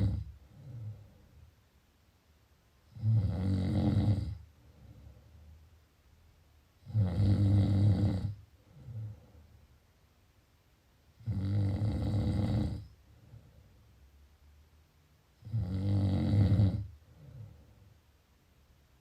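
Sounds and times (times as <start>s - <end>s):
person snoring: 0.0s - 1.2s, 2.9s - 5.2s, 6.8s - 9.4s, 11.2s - 13.5s, 15.4s - 17.7s.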